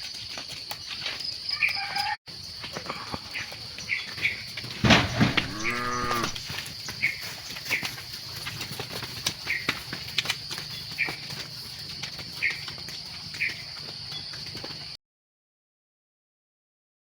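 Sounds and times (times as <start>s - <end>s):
cow mooing: 5.2s - 6.5s.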